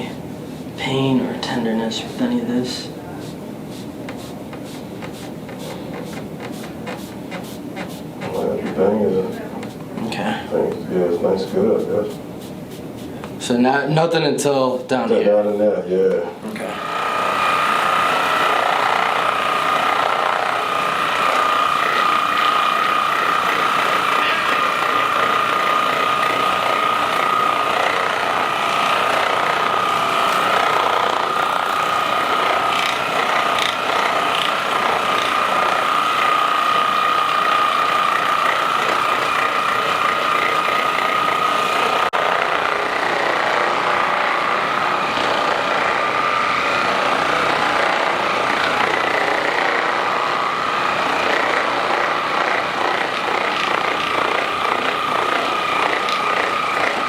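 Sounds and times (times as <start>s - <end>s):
massage gun motor whine and rattle: 16.5s - 57.0s.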